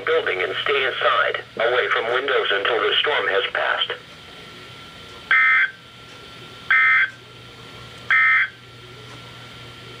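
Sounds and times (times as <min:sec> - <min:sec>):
faint steady hum: 0:00.0 - 0:10.0
two-tone buzzing data bursts: 0:05.3 - 0:05.8, 0:06.7 - 0:07.1, 0:08.1 - 0:08.6.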